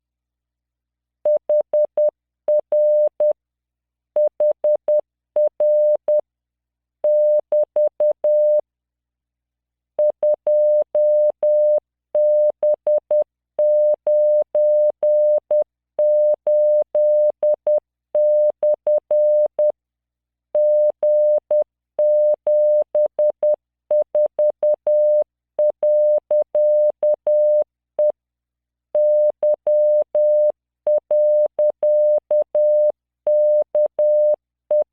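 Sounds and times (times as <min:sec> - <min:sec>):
morse code beeps: 0:07.1 - 0:08.6.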